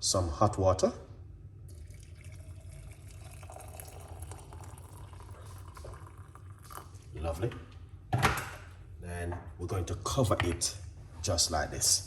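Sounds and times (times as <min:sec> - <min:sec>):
hot water pouring into container: 0:01.7 - 0:07.1.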